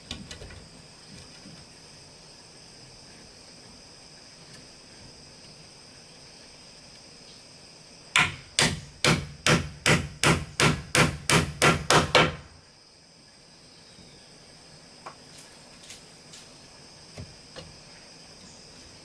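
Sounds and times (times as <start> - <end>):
high drone of insects: 0.0 - 19.0
hand tool striking wood: 8.2 - 12.5.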